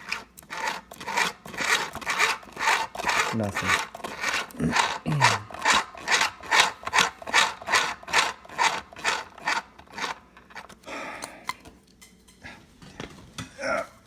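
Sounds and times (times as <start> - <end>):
sewing machine needle rasping: 0.0 - 10.7.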